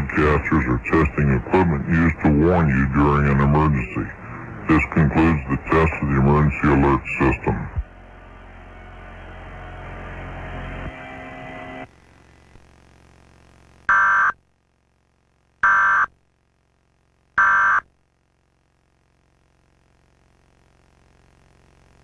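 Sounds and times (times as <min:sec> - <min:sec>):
buzzy data tone bursts: 0:00.0 - 0:14.4.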